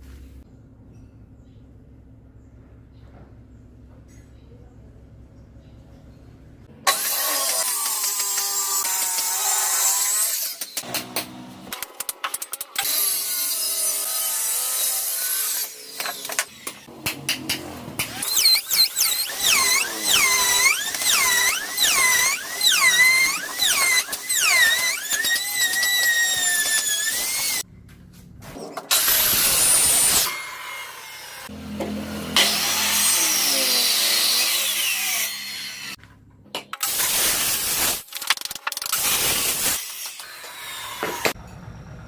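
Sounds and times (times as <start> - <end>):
power tools working wood: 6.9 - 11.8, 12.8 - 27.6, 28.9 - 36.0, 38.9 - 41.4.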